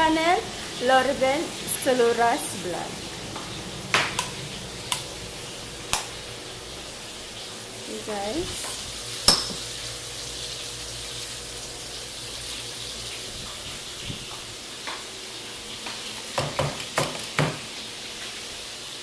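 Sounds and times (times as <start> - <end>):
chicken deep-frying in oil: 0.0 - 19.0
utensil knocking against pan: 9.3 - 9.6.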